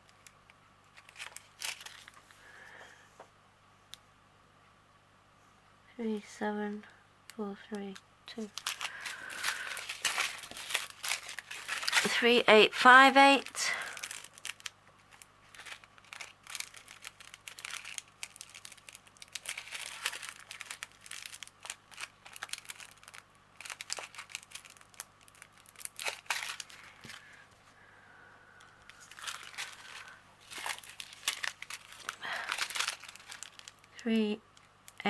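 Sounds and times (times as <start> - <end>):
plastic packets crinkling: 0.9 - 2.5, 8.3 - 27.6, 28.6 - 35.0.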